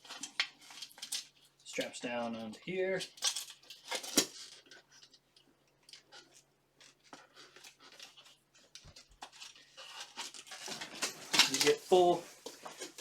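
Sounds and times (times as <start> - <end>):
strap clicks and rustles: 0.0 - 13.0.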